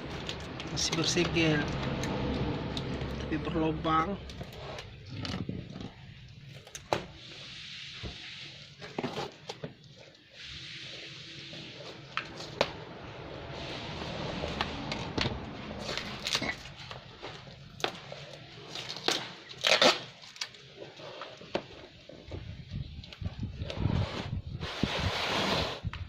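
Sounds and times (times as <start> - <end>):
wrapping rustling and crackling: 14.4 - 23.6
wrapping tearing: 15.8 - 21.4.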